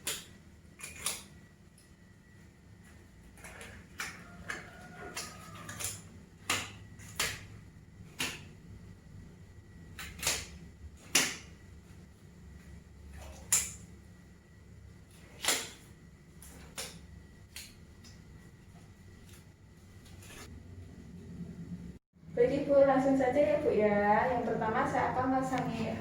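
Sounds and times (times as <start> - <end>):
latex gloves snapping: 0.0 - 1.4, 3.4 - 8.6, 10.0 - 11.6, 13.2 - 13.8, 15.3 - 18.2.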